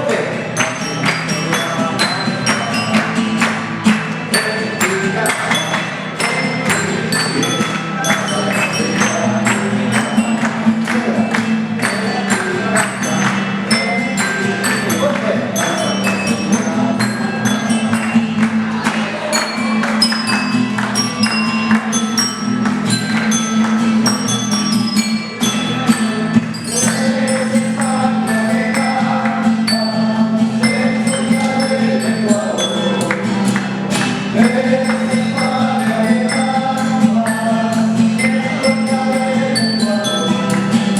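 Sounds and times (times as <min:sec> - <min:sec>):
voices singing along: 0:00.0 - 0:40.9.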